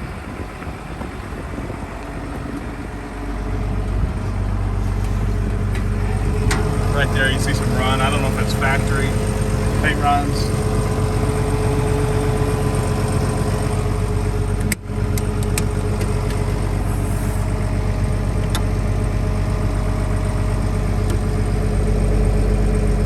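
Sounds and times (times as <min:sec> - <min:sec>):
diesel engine idling: 0:00.0 - 0:23.0.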